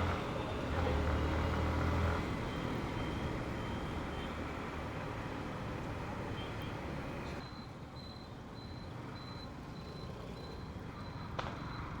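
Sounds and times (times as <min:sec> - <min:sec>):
traffic rumble: 0:00.0 - 0:07.4.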